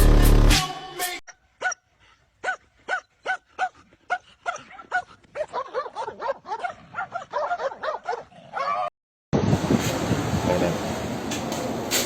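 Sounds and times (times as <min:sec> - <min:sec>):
dog yapping: 0:02.4 - 0:08.9.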